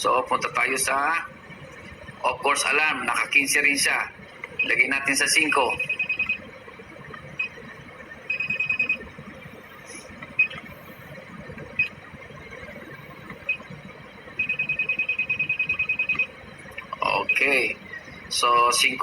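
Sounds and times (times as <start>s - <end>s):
steady low hum: 0.0s - 19.0s
control panel key beeps: 4.6s - 6.4s, 8.3s - 9.0s, 10.4s - 10.7s, 13.2s - 13.7s, 14.4s - 16.3s.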